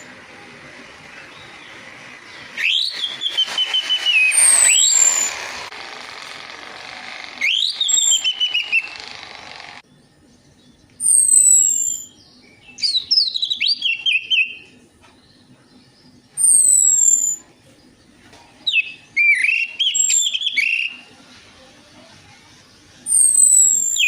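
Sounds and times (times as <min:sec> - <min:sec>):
bird chirps and warbles: 0:00.0 - 0:05.6, 0:07.4 - 0:21.2, 0:22.3 - 0:24.0
high thin falling whistle: 0:02.6 - 0:05.3, 0:07.4 - 0:08.9.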